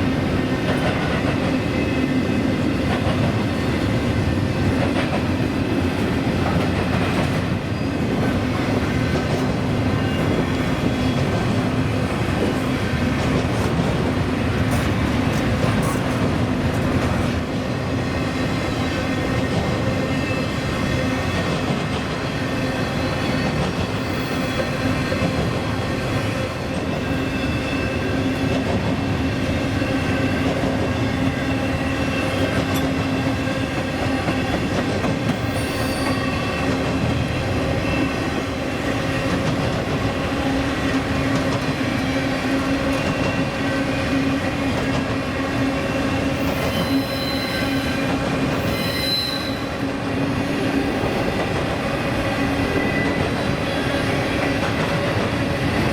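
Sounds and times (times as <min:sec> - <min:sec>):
train rolling on rails: 0:00.0 - 0:55.9
wheels squealing: 0:46.4 - 0:49.8.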